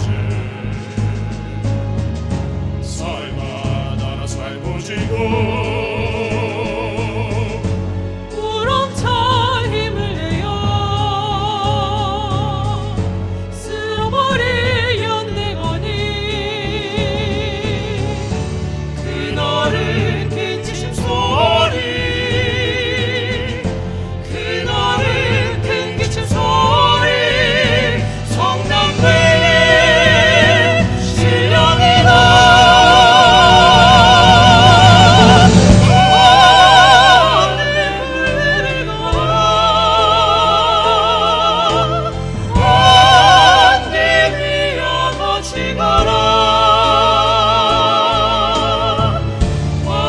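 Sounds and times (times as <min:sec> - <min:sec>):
low accompaniment: 0:00.0 - 0:50.0
vocal ensemble singing choral piece: 0:00.0 - 0:50.0.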